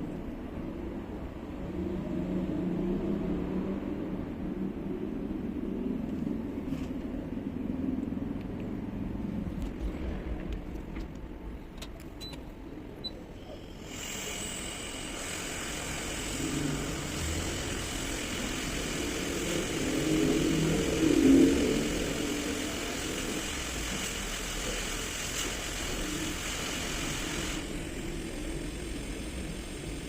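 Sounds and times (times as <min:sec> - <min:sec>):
low mechanical rumble: 0:00.0 - 0:30.0
airy hiss: 0:13.4 - 0:30.0.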